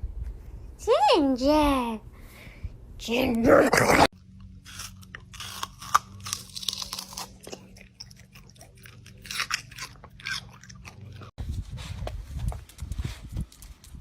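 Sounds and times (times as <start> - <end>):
crunching and chewing: 4.1 - 13.9.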